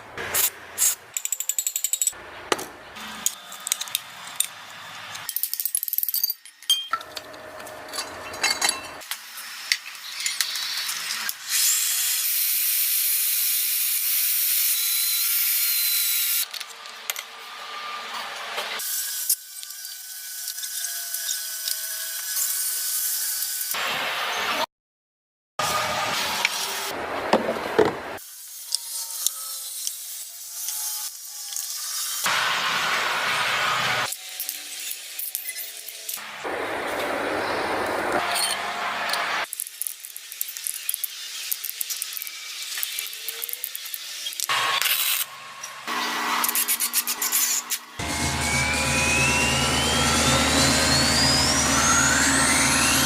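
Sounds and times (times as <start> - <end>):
hand tools clinking on metal: 5.3 - 9.0.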